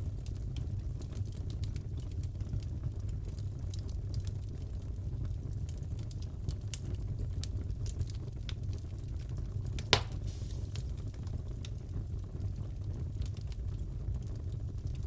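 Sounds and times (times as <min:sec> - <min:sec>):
wood fire crackling: 0:00.0 - 0:15.0
loud pop from fire: 0:09.8 - 0:11.4.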